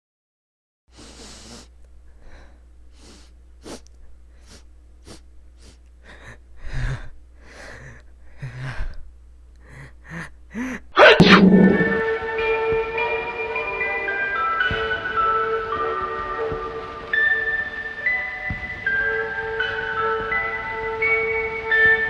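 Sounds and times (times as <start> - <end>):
low steady hum: 0.9 - 12.9
dog sneezing: 1.0 - 1.7, 3.0 - 5.8, 10.9 - 12.0
dog snuffling and snorting: 1.0 - 1.7.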